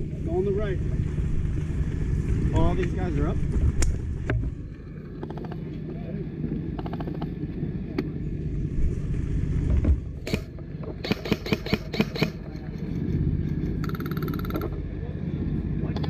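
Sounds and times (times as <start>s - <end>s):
low steady rumble: 0.0s - 16.0s
airsoft gun single shots: 10.3s - 12.4s
airsoft gun full-auto burst: 11.0s - 12.4s.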